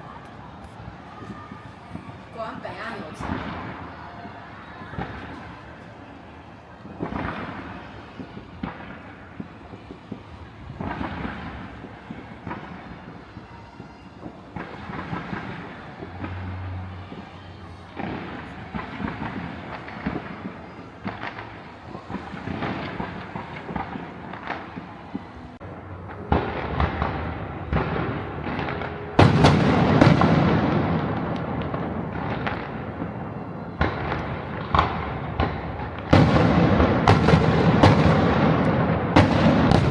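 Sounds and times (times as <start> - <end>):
fireworks bangs and crackles: 0.0 - 39.9.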